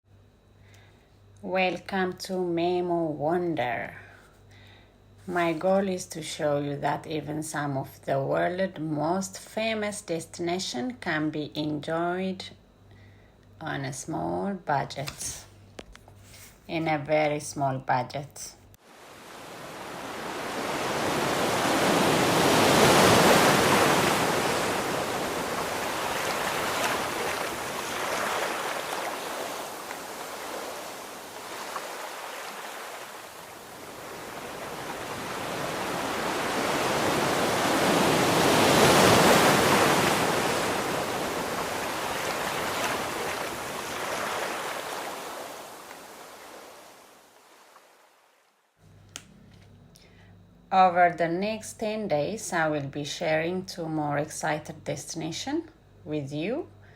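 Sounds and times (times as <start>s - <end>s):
sea waves washing onto beach: 18.8s - 48.0s.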